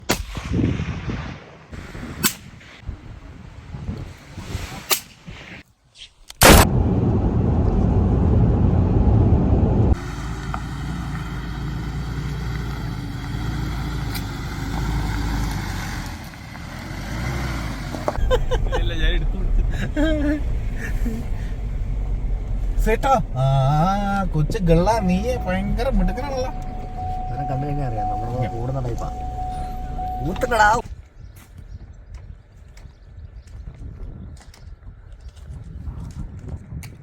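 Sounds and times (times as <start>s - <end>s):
low rumble: 6.4s - 10.6s, 18.2s - 30.9s.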